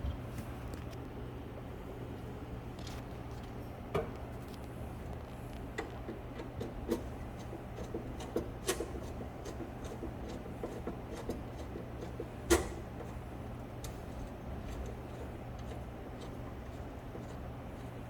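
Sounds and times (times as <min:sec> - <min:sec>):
steady low hum: 0:00.0 - 0:18.0
clicks and taps handling wires: 0:02.8 - 0:13.2, 0:13.8 - 0:18.0.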